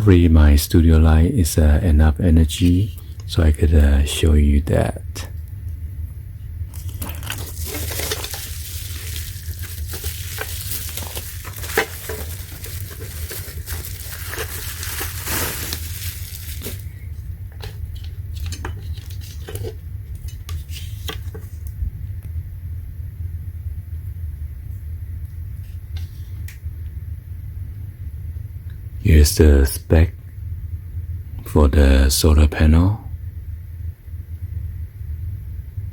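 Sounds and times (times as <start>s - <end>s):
steady low hum: 0.0s - 35.9s
plastic light being handled: 6.7s - 21.7s.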